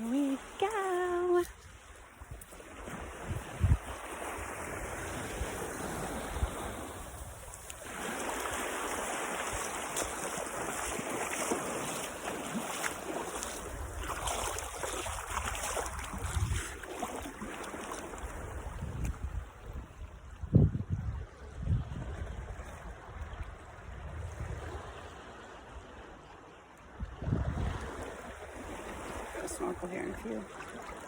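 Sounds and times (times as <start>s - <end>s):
sea surf washing onto beach: 0.0s - 19.3s, 27.4s - 31.0s
wind buffeting microphone: 1.5s - 10.2s, 13.3s - 16.9s, 18.2s - 25.9s, 27.0s - 29.7s.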